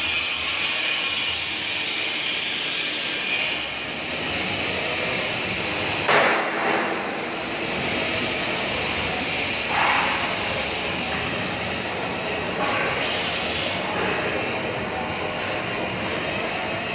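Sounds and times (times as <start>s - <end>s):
loud machinery roar: 0.0s - 16.9s.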